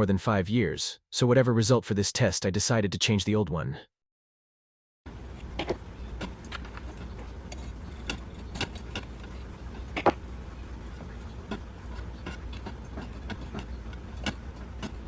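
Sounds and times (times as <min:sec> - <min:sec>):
steady low hum: 0:05.1 - 0:15.0.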